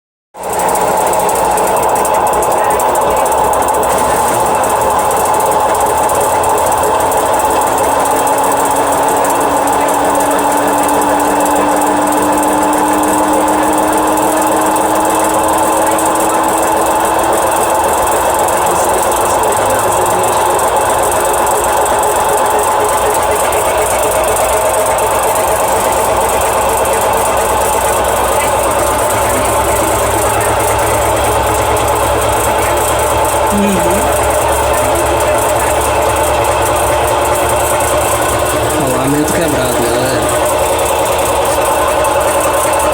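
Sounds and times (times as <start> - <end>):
washing machine grinding rattle: 0.4 - 42.9
faint hum rising in pitch: 33.4 - 36.1.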